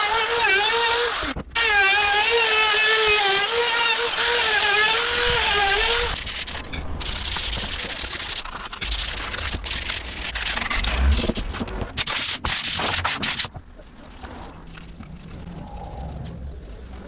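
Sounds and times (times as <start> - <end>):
wood being sanded: 0.0 - 11.3.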